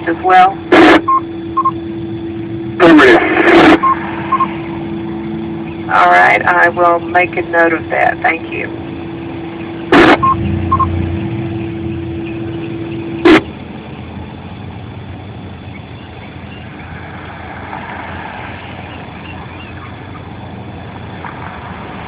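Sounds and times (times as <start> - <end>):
short radio beep: 0.0 - 1.8, 2.8 - 4.7, 9.9 - 10.9, 13.2 - 13.4
open channel hum: 0.0 - 22.0
steady low rumble: 0.0 - 22.0.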